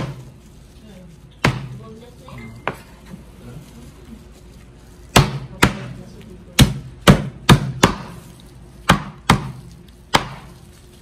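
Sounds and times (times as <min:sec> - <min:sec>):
knife chopping on board: 0:00.0 - 0:00.2, 0:01.4 - 0:01.8, 0:05.1 - 0:10.6.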